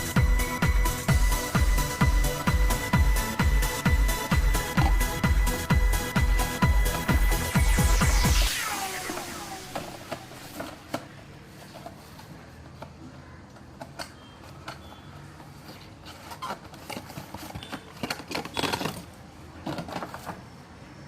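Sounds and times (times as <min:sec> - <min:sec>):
packaging rustling and clicking: 0:13.8 - 0:20.6.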